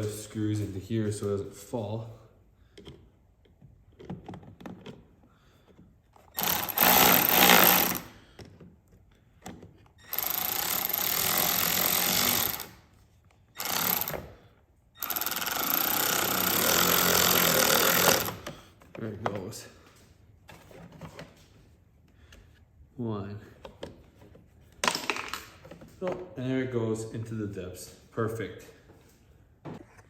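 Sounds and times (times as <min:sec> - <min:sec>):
power driver running a screw: 0:06.3 - 0:08.1, 0:10.0 - 0:12.8, 0:13.6 - 0:14.4, 0:15.0 - 0:18.5.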